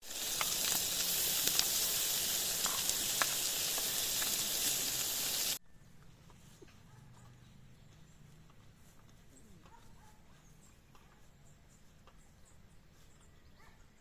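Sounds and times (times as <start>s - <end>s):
food sizzling in frying pan: 0.0s - 5.6s.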